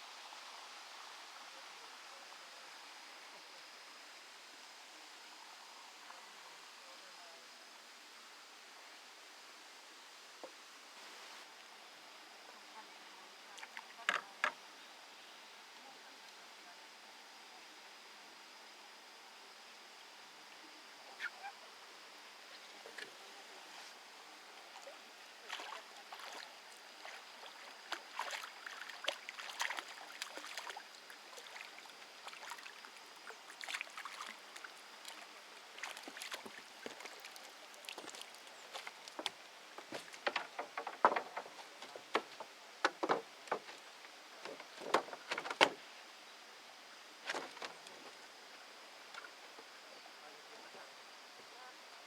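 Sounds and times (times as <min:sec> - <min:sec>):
water splashing and sloshing: 0:24.6 - 0:45.8.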